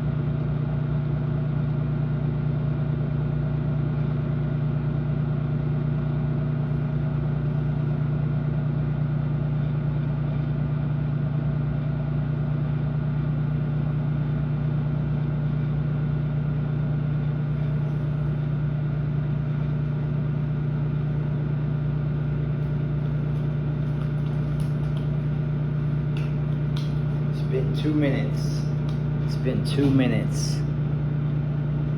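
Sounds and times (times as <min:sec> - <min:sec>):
microwave oven humming: 0:00.0 - 0:31.9.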